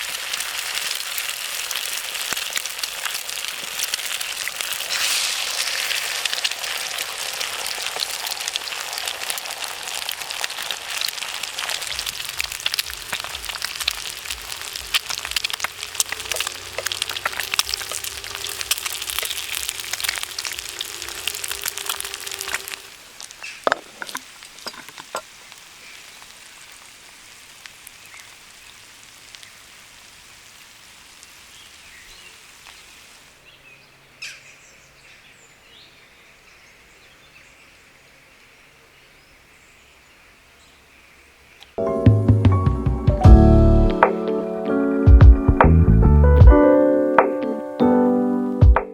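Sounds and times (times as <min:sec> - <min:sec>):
campfire crackling and popping: 0:00.0 - 0:33.4
faint outdoor ambience: 0:00.0 - 0:48.9.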